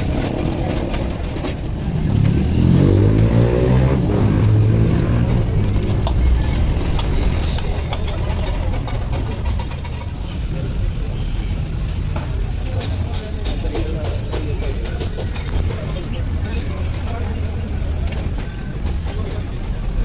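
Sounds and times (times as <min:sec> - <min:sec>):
small motorcycle engine revving: 0:02.0 - 0:05.7.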